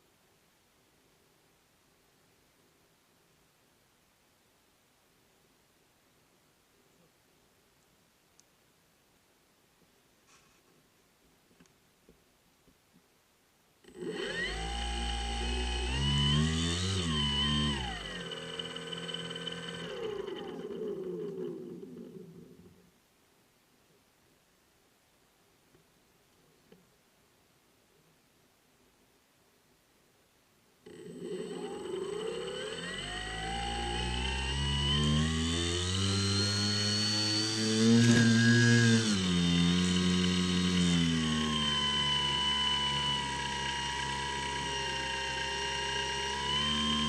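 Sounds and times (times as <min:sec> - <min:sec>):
electric model plane motor whining: 0:13.9 - 0:22.6, 0:30.9 - 0:47.0.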